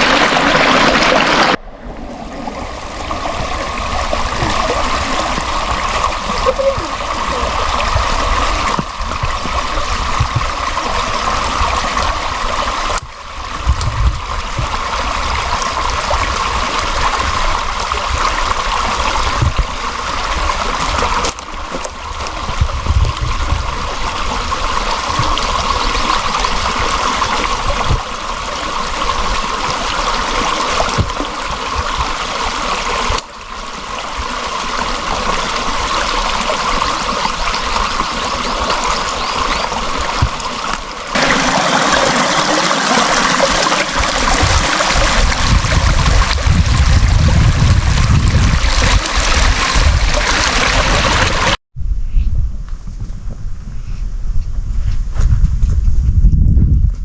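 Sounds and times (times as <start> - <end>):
running water rushing: 0.0 - 51.6.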